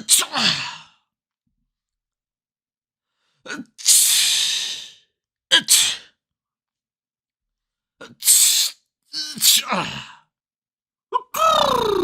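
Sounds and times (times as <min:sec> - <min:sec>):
person sneezing: 0:05.5 - 0:06.1, 0:08.1 - 0:10.0.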